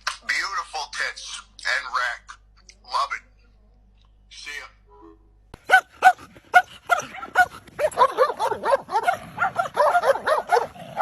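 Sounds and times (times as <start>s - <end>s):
dog yipping: 5.6s - 11.0s.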